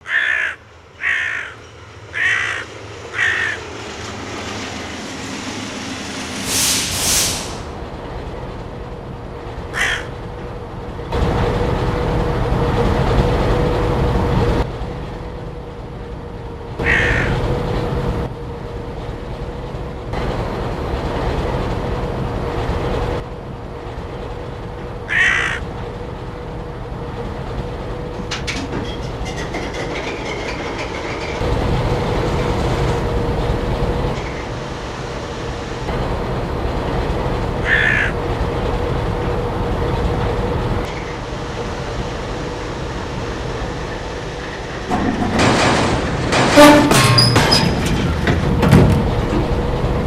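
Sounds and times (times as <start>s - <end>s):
diesel locomotive engines humming: 0.0s - 50.0s.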